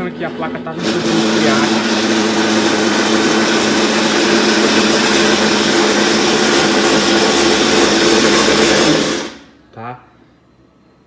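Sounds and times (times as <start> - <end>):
washing machine running: 0.7 - 9.6
loud grinding gear noise: 0.8 - 9.6.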